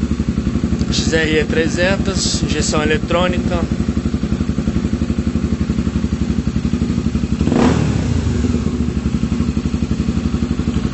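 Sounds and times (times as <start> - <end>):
motorcycle engine idling: 0.0 - 10.9.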